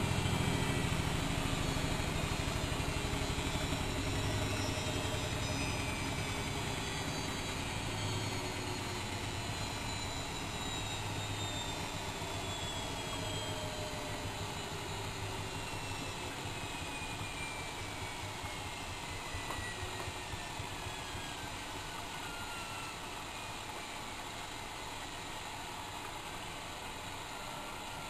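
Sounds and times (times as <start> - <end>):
washing machine drum spinning down: 0.0 - 26.3.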